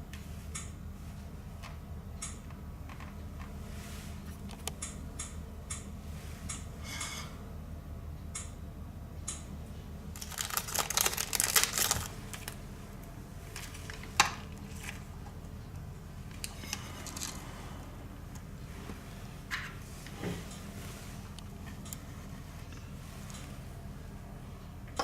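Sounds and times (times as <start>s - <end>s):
steady low hum: 0.0s - 25.0s
small hard objects clattering: 10.2s - 12.6s.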